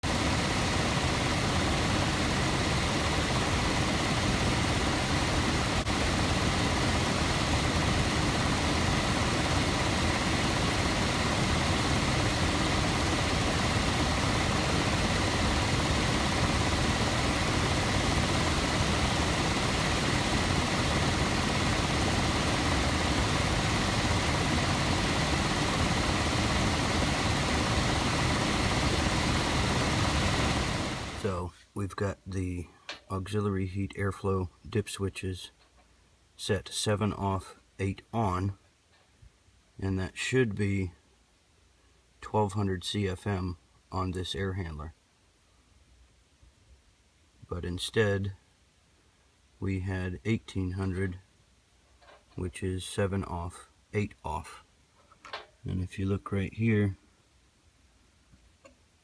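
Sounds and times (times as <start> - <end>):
blower rushing air with whine: 0.0 - 31.5.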